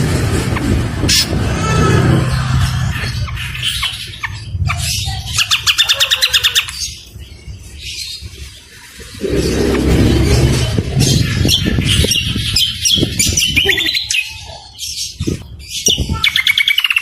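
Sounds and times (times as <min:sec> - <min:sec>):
low steady hum: 0:09.2 - 0:11.4.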